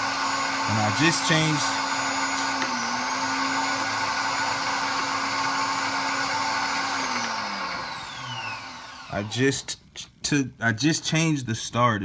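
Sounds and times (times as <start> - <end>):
car starter motor whining: 0.0 - 9.3.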